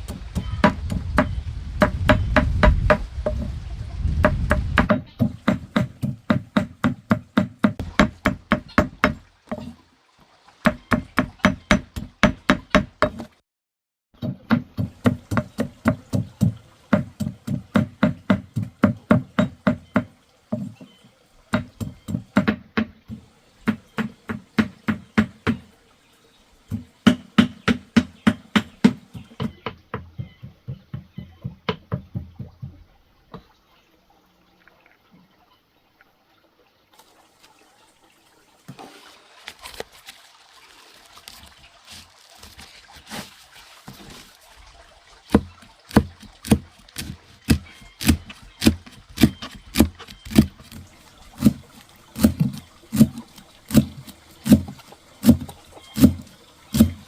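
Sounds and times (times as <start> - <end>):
knife chopping on wooden board: 45.3 - 50.8.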